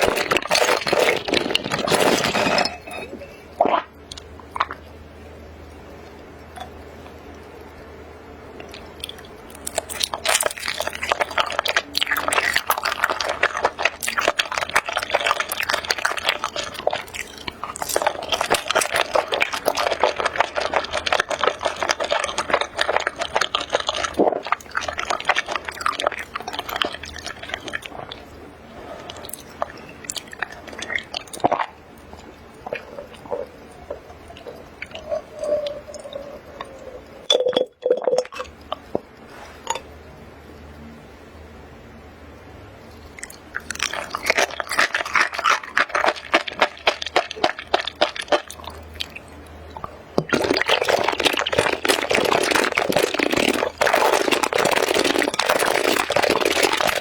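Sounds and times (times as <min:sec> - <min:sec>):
chewing and biting food: 0:00.0 - 0:02.6, 0:08.6 - 0:28.3, 0:29.0 - 0:36.8, 0:43.2 - 0:57.0.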